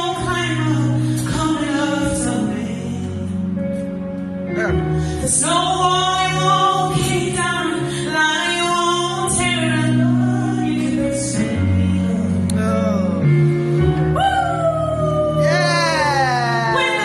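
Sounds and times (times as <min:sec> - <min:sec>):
instrumental backing chords: 0:00.0 - 0:17.0
solo voice singing with vibrato: 0:14.8 - 0:17.0.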